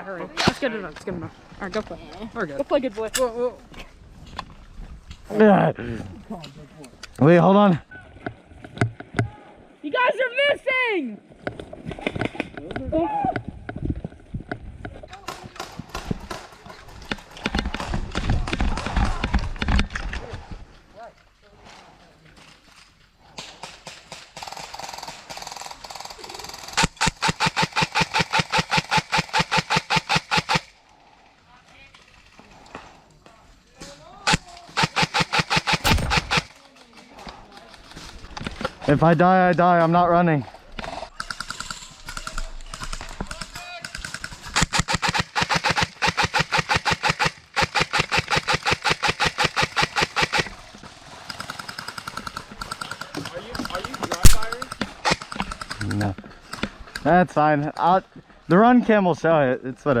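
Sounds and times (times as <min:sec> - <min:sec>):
airsoft rifle firing full-auto: 0:34.3 - 0:36.6, 0:44.2 - 0:50.5, 0:54.2 - 0:55.4
airsoft gun shots: 0:34.8 - 0:36.5, 0:54.2 - 0:55.3
faint rapid clicking: 0:40.8 - 0:57.1.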